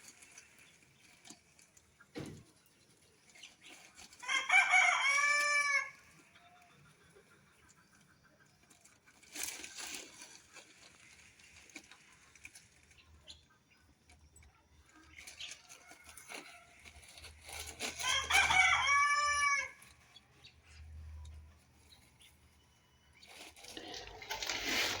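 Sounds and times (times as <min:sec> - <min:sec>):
rooster crowing: 0:04.2 - 0:06.0, 0:18.0 - 0:19.8.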